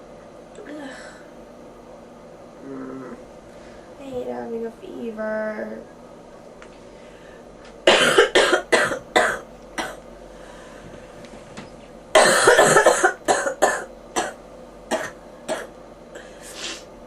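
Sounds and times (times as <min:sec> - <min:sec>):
person coughing: 0:07.9 - 0:10.0, 0:12.2 - 0:15.7.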